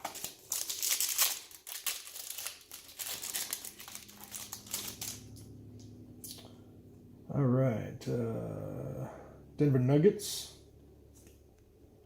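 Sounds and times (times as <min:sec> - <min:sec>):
wrapper crinkling: 0:00.0 - 0:05.5.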